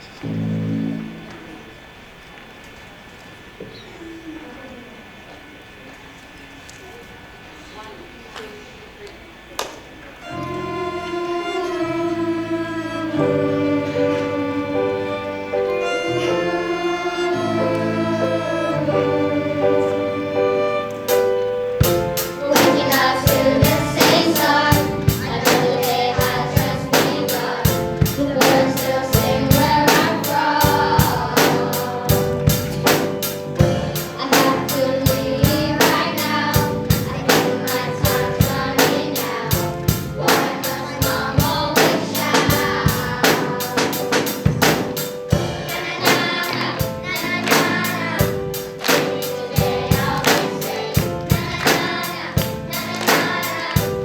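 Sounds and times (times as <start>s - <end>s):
held keyboard chords: 0.0s - 1.8s, 10.2s - 54.0s
children's choir singing: 0.0s - 1.9s, 10.1s - 54.0s
steady drum beat: 21.1s - 54.0s.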